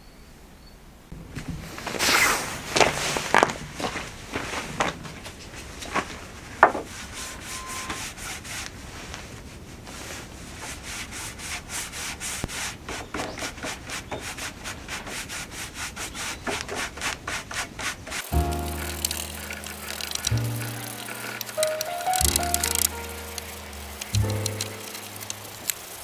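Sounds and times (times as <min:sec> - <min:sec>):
rubbing strokes on wood: 0:10.7 - 0:26.0.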